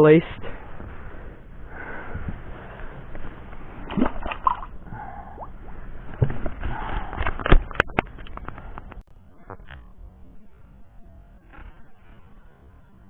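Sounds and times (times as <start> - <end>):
water sloshing and splashing: 3.8 - 5.6.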